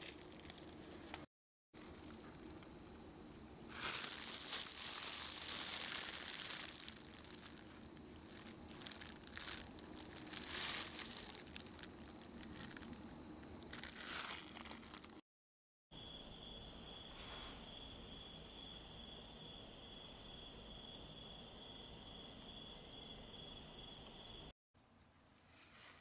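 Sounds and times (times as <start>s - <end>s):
rustling crinkling noise: 0.0s - 3.0s, 3.6s - 15.2s.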